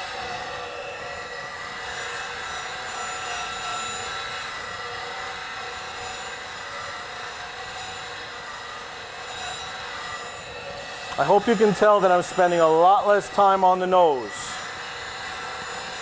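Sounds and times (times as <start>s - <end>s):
bench grinder grinding steel: 0.0s - 16.0s
high tones from spinning wheel: 8.8s - 16.0s.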